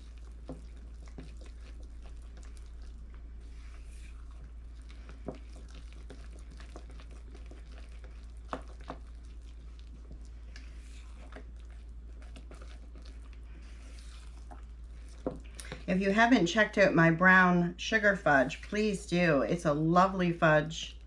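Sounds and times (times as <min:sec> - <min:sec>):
sticky scraping in saucepan: 0:00.0 - 0:16.5
steady low hum: 0:00.0 - 0:21.0.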